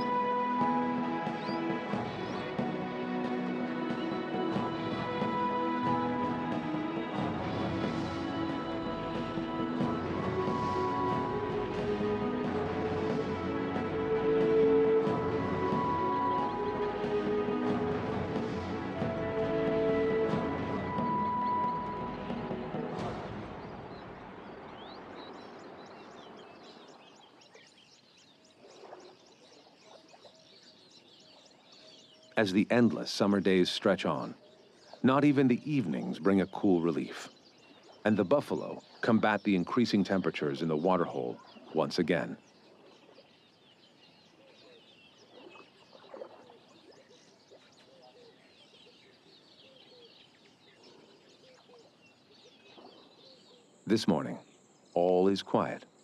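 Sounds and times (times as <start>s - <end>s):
chorus of high chirps: 19.3s - 23.0s
small birds chirping: 20.9s - 56.0s.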